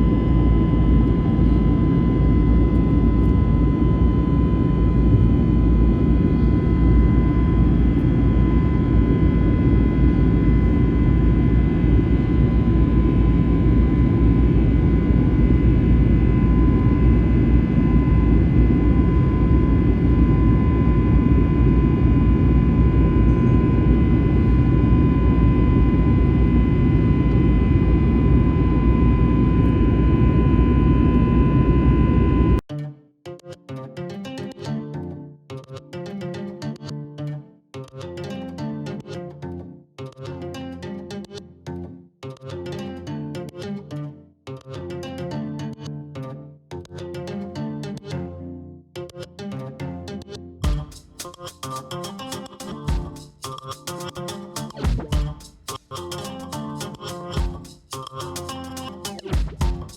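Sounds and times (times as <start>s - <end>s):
faint high whine: 0.0s - 32.6s.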